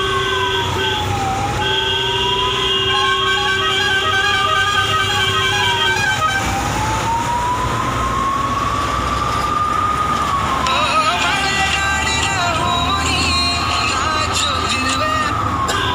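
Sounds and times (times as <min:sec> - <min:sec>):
ambulance siren wailing: 0:00.0 - 0:15.9.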